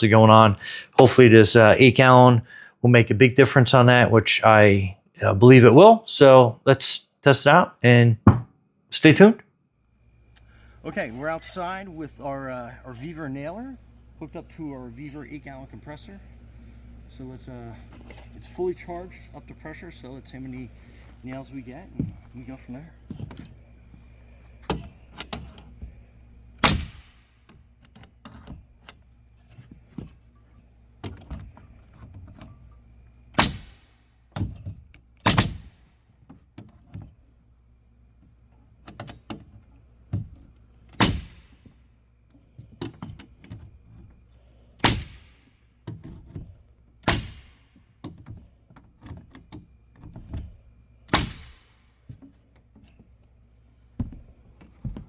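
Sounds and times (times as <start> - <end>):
light taps and knocks: 8.2 - 8.5, 22.0 - 22.4, 54.0 - 55.0
nailer striking nails: 26.6 - 27.3, 33.4 - 34.6, 35.2 - 35.9, 41.0 - 41.7, 44.8 - 45.5, 47.0 - 47.8, 51.1 - 51.8.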